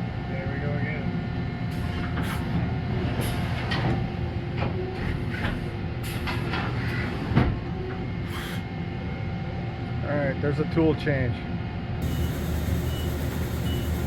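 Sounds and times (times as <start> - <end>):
lathe machine hum: 12.0 - 14.0
sharp mechanical clicks and clunks: 12.0 - 14.0.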